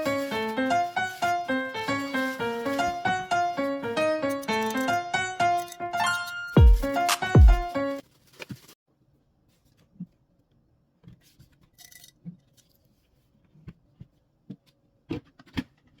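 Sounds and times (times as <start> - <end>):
piano music: 0.0 - 8.0.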